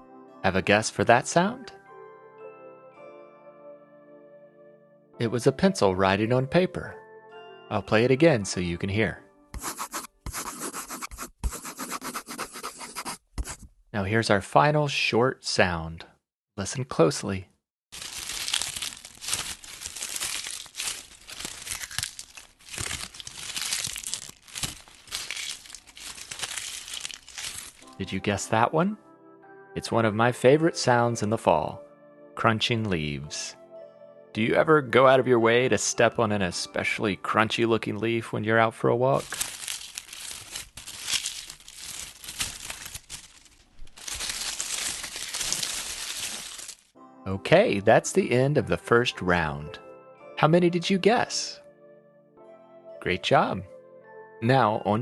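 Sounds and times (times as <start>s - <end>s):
dry leaves crunching: 17.9s - 28.0s, 39.1s - 46.9s.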